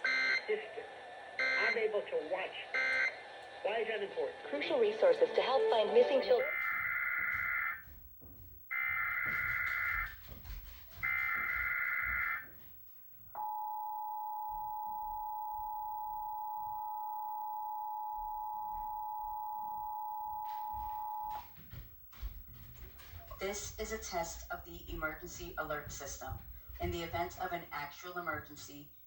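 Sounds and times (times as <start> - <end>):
two-tone attention signal: 0.0 - 0.4, 1.4 - 1.8, 2.8 - 3.1, 13.4 - 21.4.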